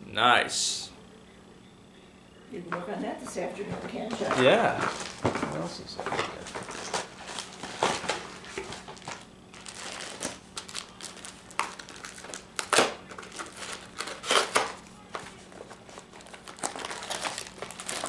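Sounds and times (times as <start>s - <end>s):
wrapping paper crumpling: 4.1s - 18.0s.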